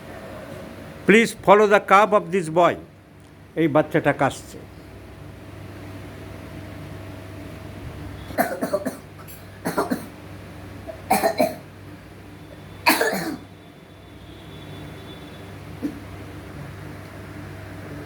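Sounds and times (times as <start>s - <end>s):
boy coughing: 8.3s - 10.2s, 10.9s - 11.7s, 12.8s - 13.4s.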